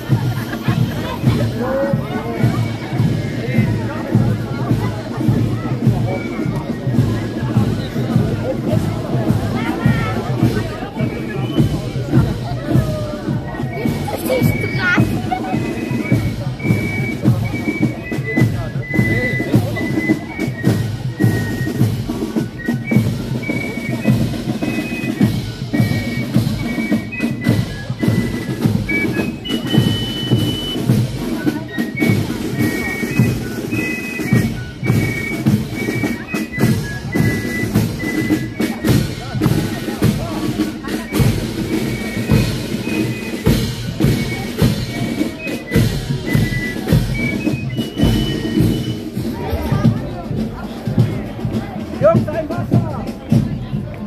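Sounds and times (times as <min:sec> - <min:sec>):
marching band music: 0:00.0 - 0:54.0
bass drum strokes: 0:48.0 - 0:54.0.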